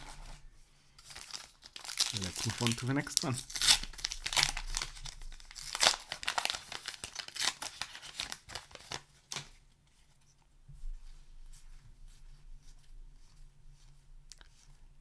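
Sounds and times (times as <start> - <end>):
paper wrapper tearing and rustling: 0.0 - 0.4, 1.0 - 9.6.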